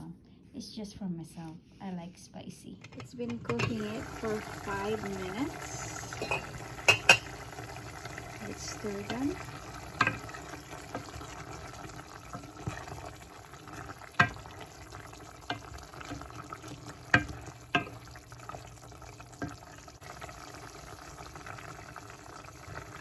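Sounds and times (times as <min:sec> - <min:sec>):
simmering liquid hissing: 0:03.7 - 0:23.0
spoon clinking against pot: 0:06.2 - 0:07.3.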